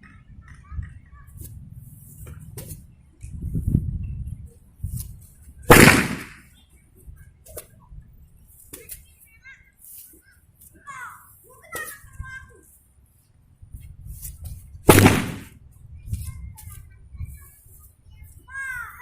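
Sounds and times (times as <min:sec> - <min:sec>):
whip cracking: 0:05.7 - 0:06.4, 0:14.2 - 0:15.6.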